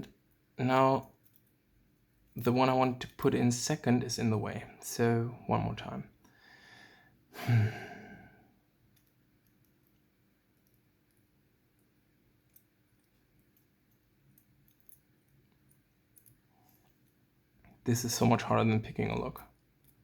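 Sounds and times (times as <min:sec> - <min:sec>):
soft breath: 0:06.3 - 0:08.5
man sighing heavily: 0:07.4 - 0:08.4
faint small clicks: 0:08.9 - 0:17.8.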